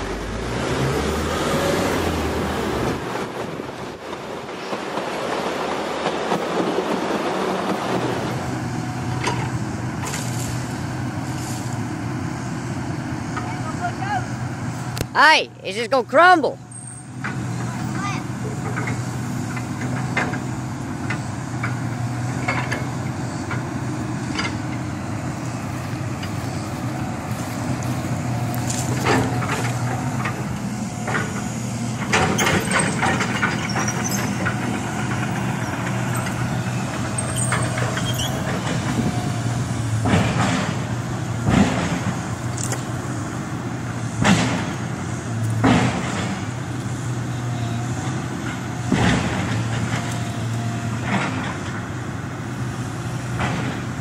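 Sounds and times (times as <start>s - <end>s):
excavator diesel engine running: 0.0s - 54.0s.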